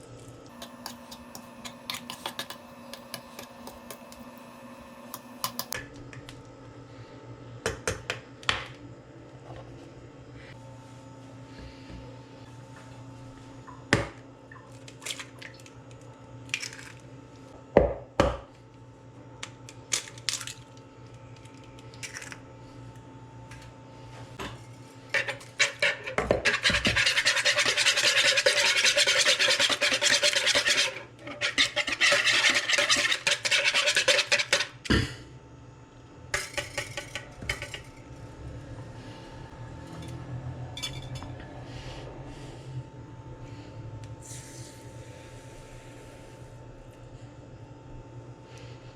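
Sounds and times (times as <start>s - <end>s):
utensils knocking against bowls: 0.5s - 4.3s
utensil scraping in bowl: 0.5s - 4.5s, 25.1s - 34.8s.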